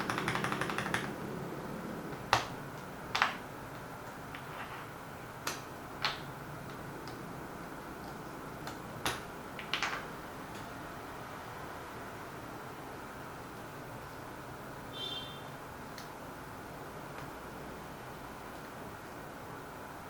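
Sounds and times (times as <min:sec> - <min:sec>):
mechanical keyboard keystrokes: 0:00.0 - 0:01.2.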